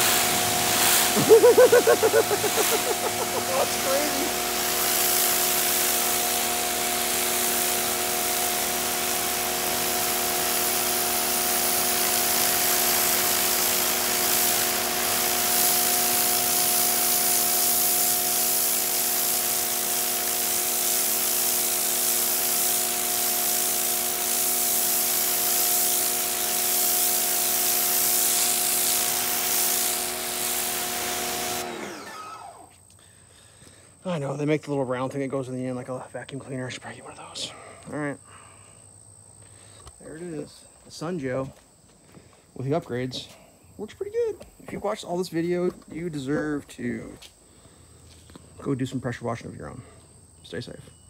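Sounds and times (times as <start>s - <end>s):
water jet hissing: 0.0s - 32.7s
pressure washer motor humming: 0.0s - 32.8s.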